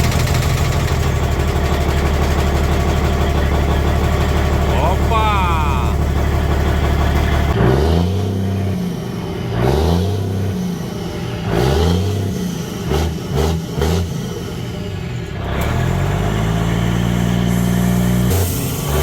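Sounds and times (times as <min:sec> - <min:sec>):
diesel truck engine revving: 0:05.9 - 0:19.0.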